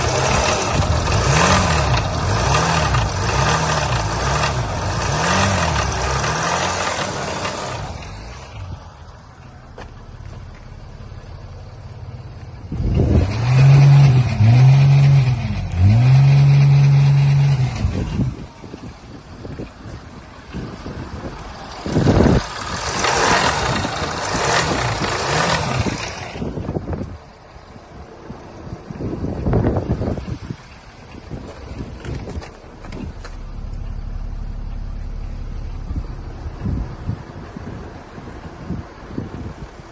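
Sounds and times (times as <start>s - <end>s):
car engine revving: 0.0s - 8.9s, 9.8s - 18.5s, 21.2s - 26.6s, 31.8s - 38.8s.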